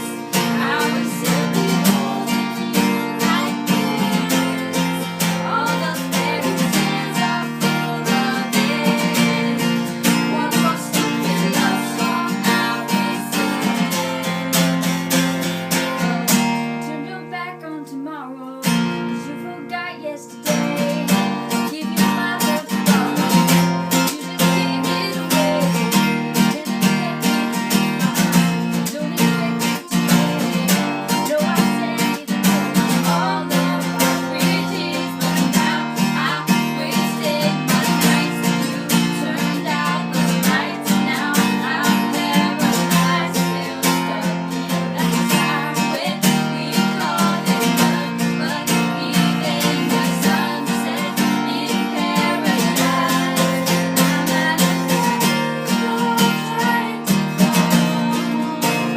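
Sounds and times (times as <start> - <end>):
strummed acoustic guitar: 0.0 - 58.9.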